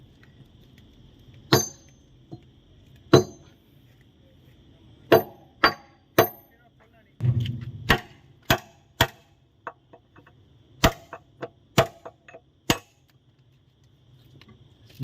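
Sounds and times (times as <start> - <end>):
hammer striking steel: 1.5 - 1.9, 3.1 - 3.5, 5.1 - 6.6, 7.2 - 9.4, 10.8 - 11.2.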